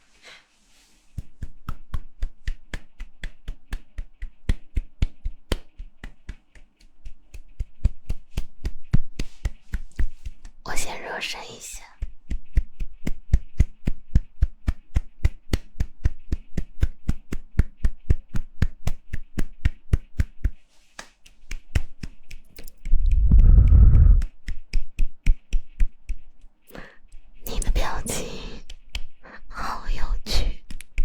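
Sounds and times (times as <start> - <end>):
rapid hand claps: 1.2 - 10.6, 12.0 - 23.2, 24.2 - 27.2, 28.6 - 29.2, 30.6 - 31.0.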